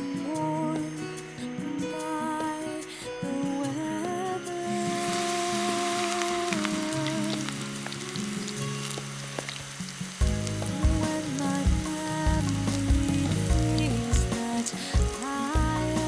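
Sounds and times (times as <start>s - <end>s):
tempura sizzling in hot oil: 4.5s - 16.0s
background music with bass: 10.2s - 16.0s.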